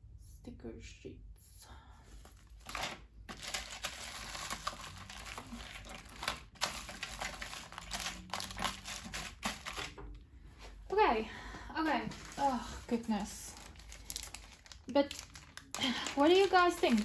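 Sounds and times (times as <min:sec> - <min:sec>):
plastic packaging crinkling: 0:02.4 - 0:10.2, 0:11.9 - 0:17.0.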